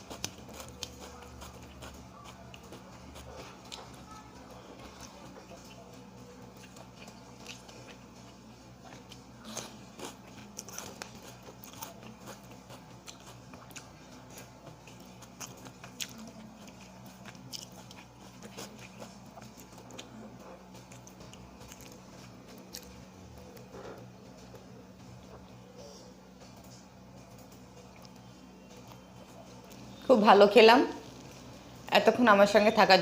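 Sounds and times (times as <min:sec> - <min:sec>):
person chewing with mouth clicks: 0:00.0 - 0:04.0, 0:04.8 - 0:24.6, 0:27.4 - 0:29.9.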